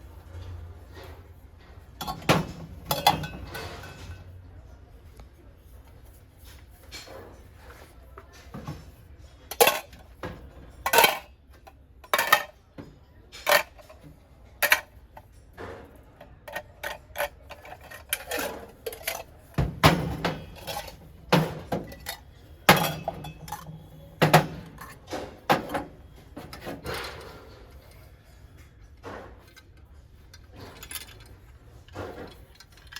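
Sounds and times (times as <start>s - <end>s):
brass vessels clanking: 2.0s - 4.3s, 20.0s - 25.7s.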